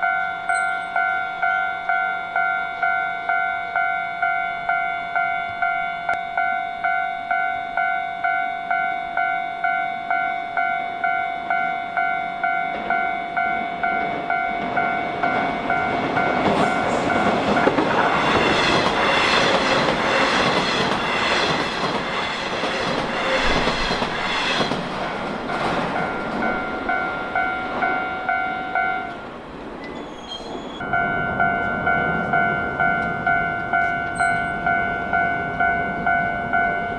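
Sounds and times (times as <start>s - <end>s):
crossing warning bell dinging: 0.0s - 36.9s
train wheels clattering on rails: 12.5s - 28.3s.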